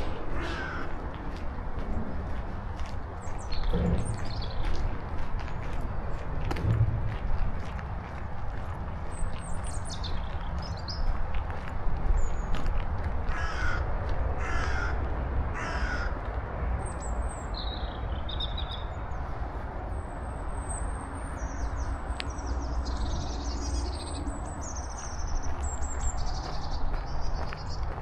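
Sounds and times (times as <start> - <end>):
songbirds chirping: 0.0 - 6.4, 8.0 - 11.2, 15.6 - 28.0
crow cawing: 0.2 - 1.0, 13.3 - 15.0, 15.6 - 16.2.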